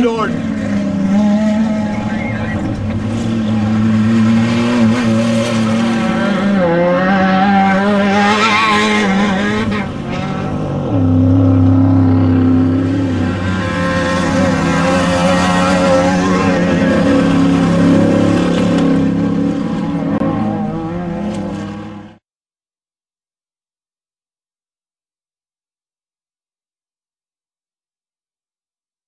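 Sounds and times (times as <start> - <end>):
race vehicle engine running hard: 0.0 - 22.2.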